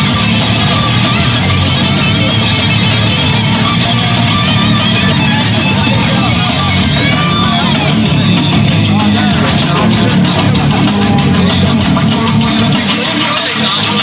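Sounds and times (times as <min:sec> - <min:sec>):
rock music with electric guitar: 0:00.0 - 0:14.0.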